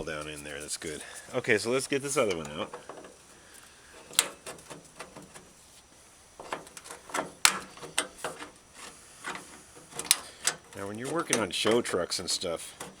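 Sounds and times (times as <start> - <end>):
pry bar clicking and scraping metal: 6.4 - 13.0.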